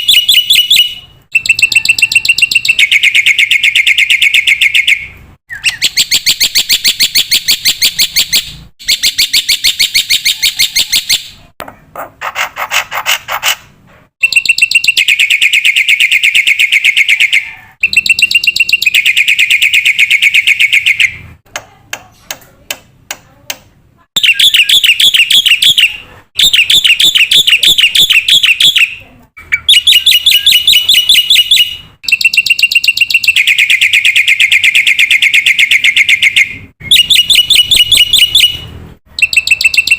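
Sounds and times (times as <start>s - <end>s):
bird singing rapid trills: 0.0s - 11.4s, 24.2s - 38.6s.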